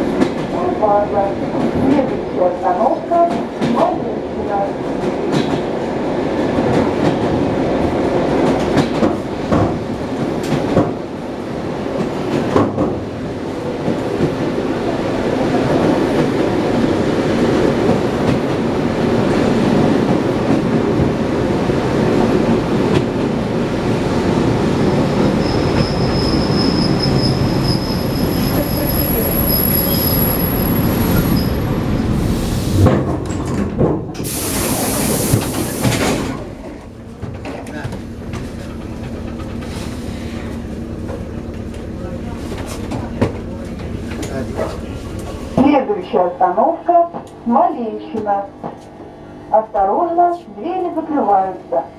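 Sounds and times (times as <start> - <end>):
wheel and rail rumble: 0.0 - 51.5
clacks over rail joints: 8.4 - 11.0, 35.4 - 40.0.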